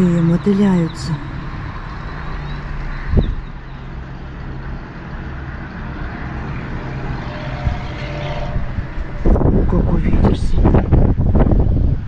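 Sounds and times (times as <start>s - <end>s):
gusty wind through trees: 0.0s - 12.0s
wind buffeting microphone: 1.2s - 3.6s, 6.6s - 12.0s
steady low rumble: 8.6s - 12.0s.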